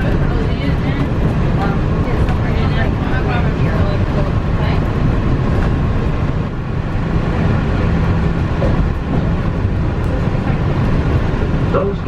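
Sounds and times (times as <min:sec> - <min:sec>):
monorail running rumble: 0:00.0 - 0:12.0.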